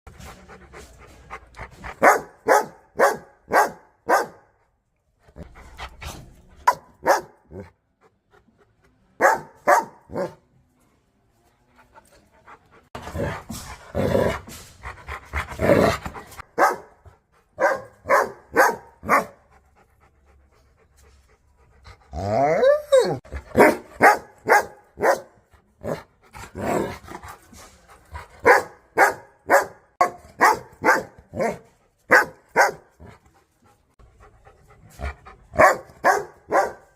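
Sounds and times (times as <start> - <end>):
dogs barking aggressively: 1.9 - 4.5, 6.6 - 7.7, 9.2 - 10.4, 15.1 - 17.0, 17.6 - 19.4, 23.3 - 25.3, 28.4 - 33.0, 35.6 - 36.9.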